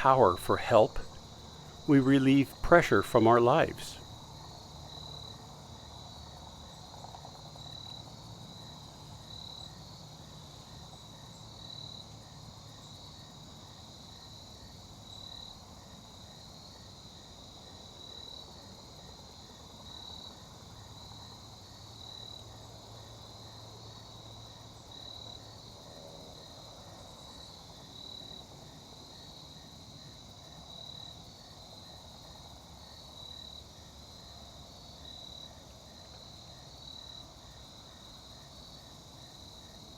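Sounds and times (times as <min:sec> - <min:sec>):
crickets chirping: 0:00.0 - 0:39.9.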